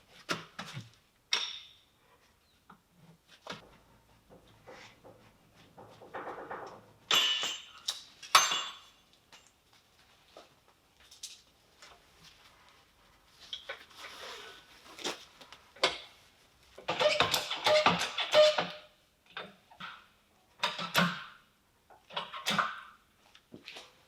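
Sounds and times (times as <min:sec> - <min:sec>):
tools and metal parts clattering: 0:04.2 - 0:09.6, 0:16.8 - 0:18.8.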